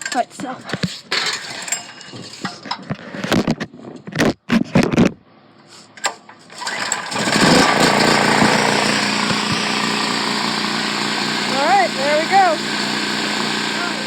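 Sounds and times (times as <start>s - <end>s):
generator engine starting and running: 5.9s - 14.0s.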